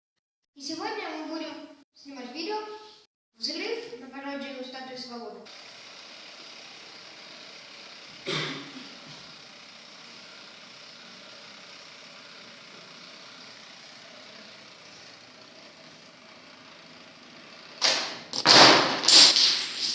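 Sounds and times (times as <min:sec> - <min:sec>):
sharp bang: 0:17.8 - 0:19.6.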